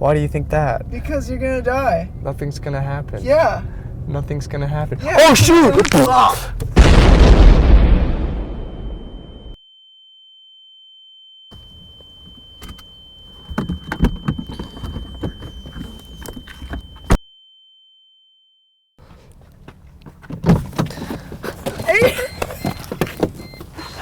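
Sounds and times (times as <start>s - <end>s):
high-pitched ringing tone: 8.9s - 18.9s.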